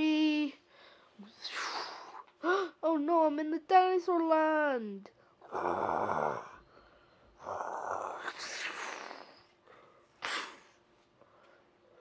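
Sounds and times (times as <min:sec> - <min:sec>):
person making dinosaur roars: 0:05.4 - 0:06.6, 0:07.4 - 0:09.2.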